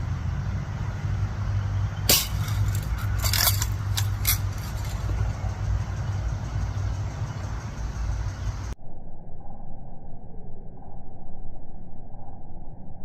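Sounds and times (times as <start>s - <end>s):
steady low rumble: 0.0s - 13.0s
bb gun firing: 2.1s - 3.6s.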